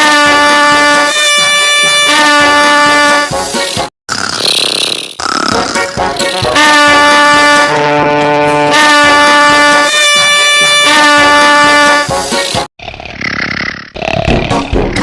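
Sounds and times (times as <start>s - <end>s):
held brass-like chords: 0.0s - 3.6s, 5.8s - 12.3s.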